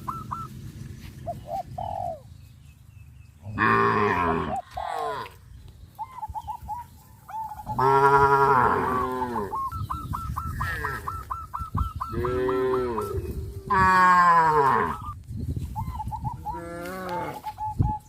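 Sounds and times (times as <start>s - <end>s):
cow mooing: 3.5s - 5.3s, 7.7s - 9.5s, 12.1s - 15.0s, 16.5s - 17.4s.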